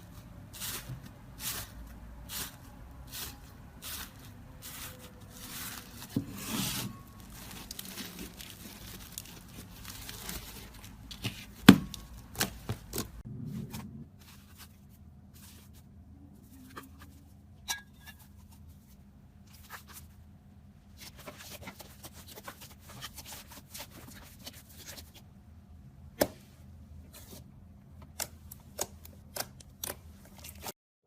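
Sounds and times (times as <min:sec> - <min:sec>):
slime clicking and crackling: 0:07.2 - 0:13.2.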